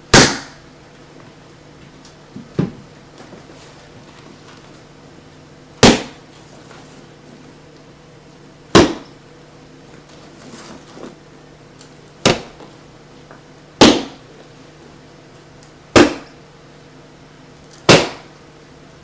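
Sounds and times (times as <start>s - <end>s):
faint steady hum: 0.0s - 19.0s
sharp bangs: 0.1s - 0.6s, 5.8s - 6.2s.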